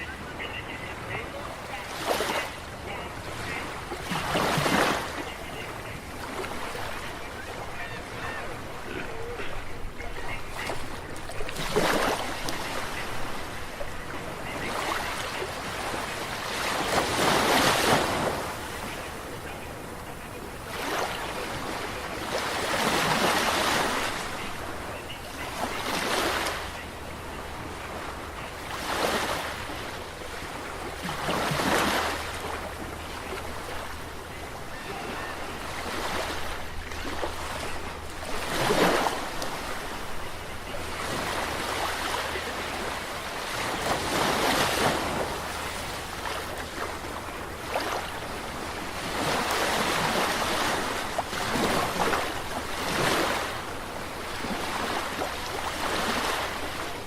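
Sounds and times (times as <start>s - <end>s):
sea waves breaking: 0.0s - 57.0s.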